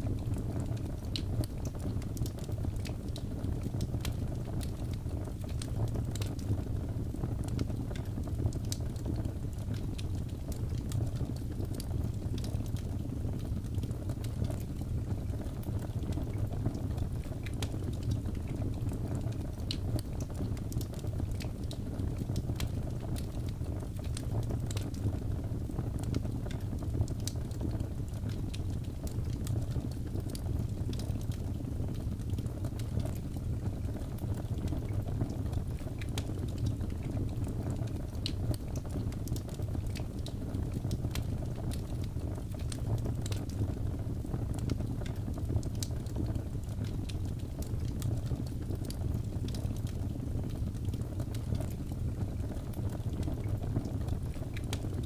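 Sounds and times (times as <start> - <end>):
fire crackles and pops: 0.0 - 55.0
low rumble of flames: 0.0 - 55.0.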